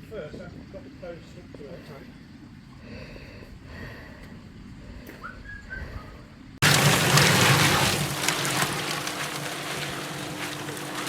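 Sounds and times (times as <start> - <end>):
cement mixer churning: 6.6 - 11.0.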